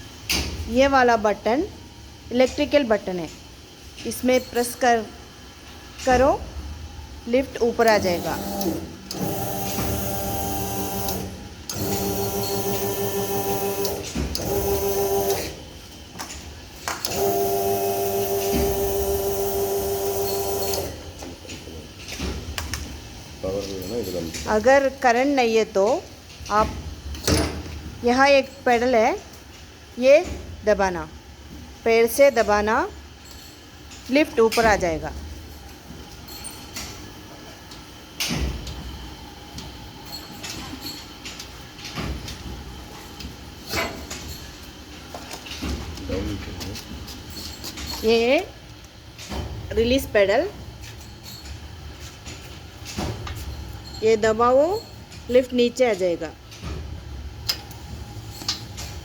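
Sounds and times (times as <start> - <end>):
hydraulic pump whine: 7.8 - 15.6, 17.0 - 21.1
hydraulic pump pedal clunks: 16.2 - 22.8.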